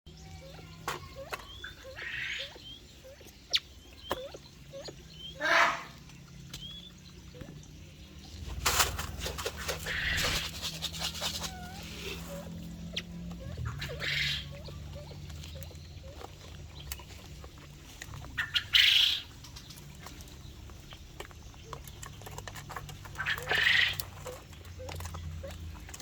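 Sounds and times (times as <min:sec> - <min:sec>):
small birds chirping: 0:00.1 - 0:26.0
hoarse bird squawks: 0:00.4 - 0:06.0, 0:09.6 - 0:15.2, 0:18.4 - 0:19.3, 0:23.2 - 0:24.3
rustling and clicking: 0:07.4 - 0:26.0.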